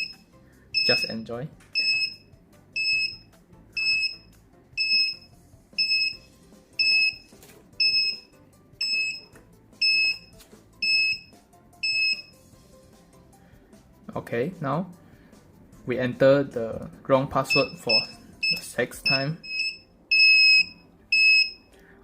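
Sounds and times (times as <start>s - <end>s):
electronic alarm buzzer beeping: 0.0s - 0.2s, 0.8s - 1.2s, 1.8s - 12.4s, 17.5s - 21.7s.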